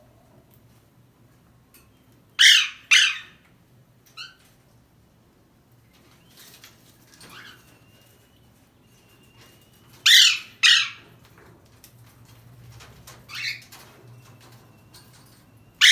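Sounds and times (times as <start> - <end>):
parrot screeching: 2.4 - 3.4, 10.1 - 11.0.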